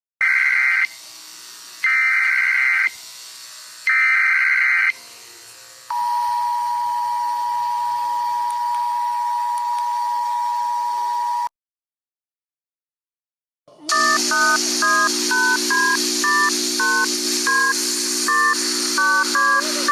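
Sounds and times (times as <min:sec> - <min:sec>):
digital header data bursts: 0:13.9 - 0:19.9
two-tone attention signal: 0:13.9 - 0:19.9.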